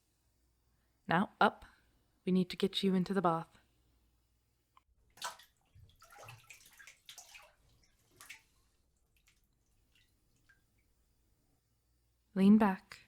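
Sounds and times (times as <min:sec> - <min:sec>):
water sloshing in a bathtub: 0:05.0 - 0:11.7.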